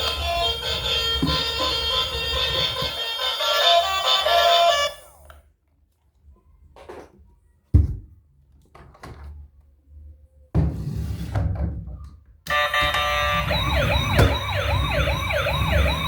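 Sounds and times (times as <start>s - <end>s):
toy siren: 0.0s - 5.0s, 12.5s - 16.0s
toy beeping tune: 12.5s - 16.0s.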